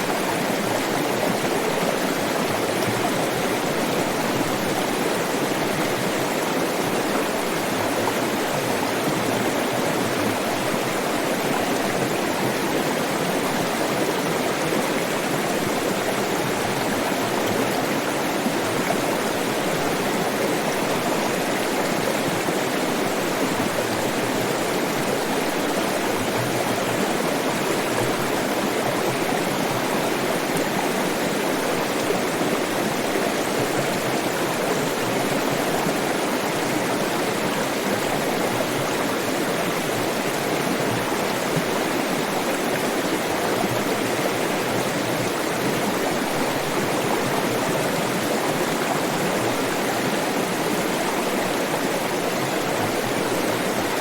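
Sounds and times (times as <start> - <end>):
water flowing in a stream: 0.0 - 54.0.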